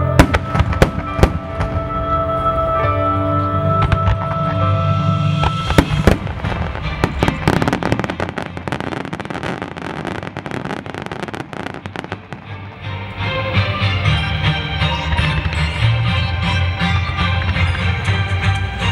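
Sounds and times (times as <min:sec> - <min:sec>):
firework bursts and crackle: 0:00.0 - 0:01.9, 0:05.4 - 0:12.6
music playing: 0:00.0 - 0:18.9.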